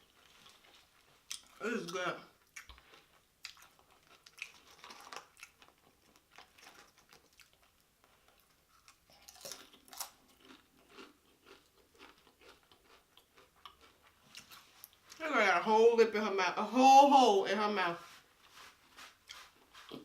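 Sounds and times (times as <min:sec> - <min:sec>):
tortilla chips crunching in mouth: 0:02.4 - 0:15.2.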